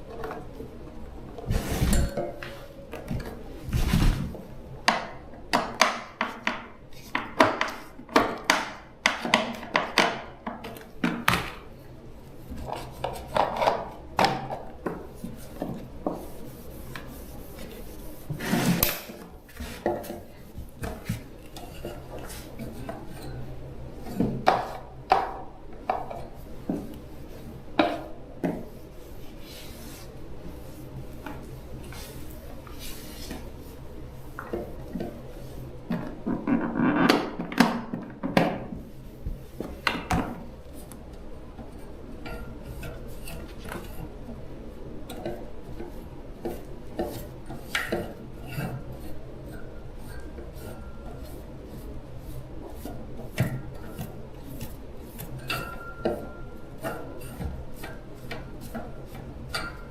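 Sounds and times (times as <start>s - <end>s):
objects knocking and scraping: 1.4s - 11.6s, 12.5s - 26.9s, 34.3s - 40.5s.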